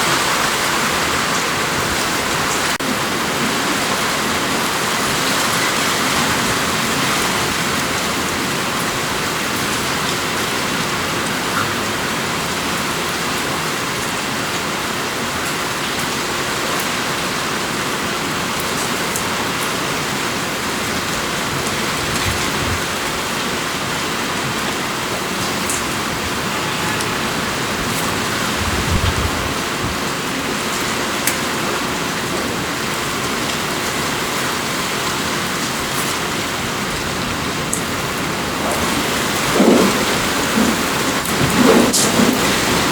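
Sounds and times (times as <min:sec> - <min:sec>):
steady rain falling: 0:00.0 - 0:42.9
low rumble of thunder: 0:21.4 - 0:30.8, 0:36.9 - 0:42.9.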